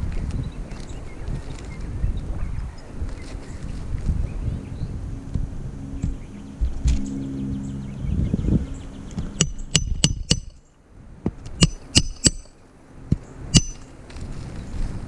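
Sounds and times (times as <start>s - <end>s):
sharp metallic clinks: 9.4s - 10.7s, 11.6s - 12.5s, 13.5s - 13.9s.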